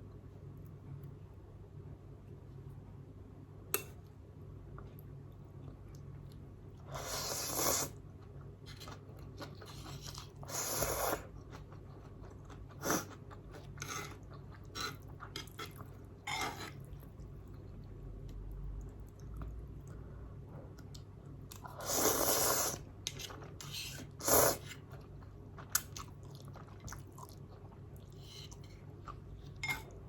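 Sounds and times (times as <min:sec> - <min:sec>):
chewing and mouth sounds: 0:24.8 - 0:29.6.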